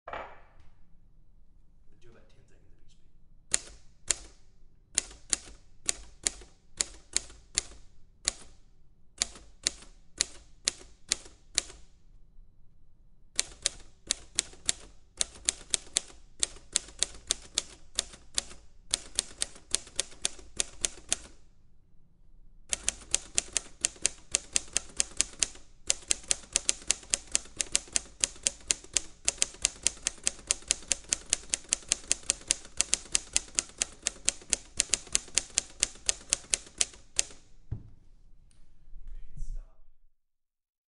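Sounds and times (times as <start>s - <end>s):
typewriter keys clicking: 5.0s - 8.6s, 9.2s - 11.8s, 13.4s - 21.4s, 22.7s - 37.4s.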